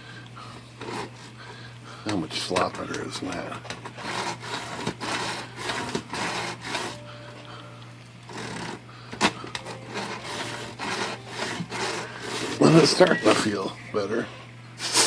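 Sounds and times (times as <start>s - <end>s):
typewriter carriage rubbing: 2.7s - 7.0s, 8.3s - 13.4s.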